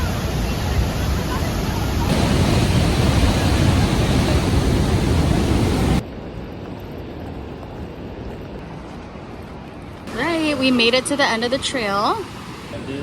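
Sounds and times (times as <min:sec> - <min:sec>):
roar of rushing water: 0:00.0 - 0:06.0.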